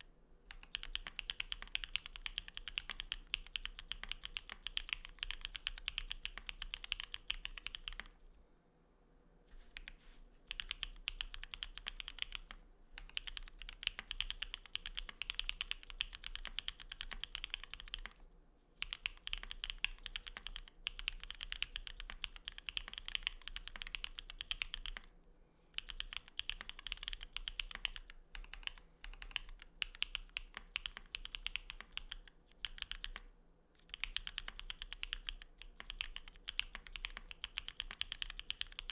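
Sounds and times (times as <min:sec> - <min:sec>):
fast typing on mechanical keyboard: 0:00.5 - 0:08.2, 0:09.8 - 0:18.2, 0:18.8 - 0:25.1, 0:25.8 - 0:38.9.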